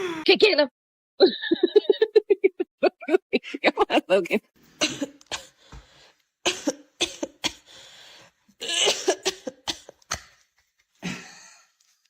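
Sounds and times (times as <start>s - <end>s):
person coughing: 4.8s - 5.6s, 6.5s - 7.7s, 8.6s - 10.0s, 11.0s - 11.6s.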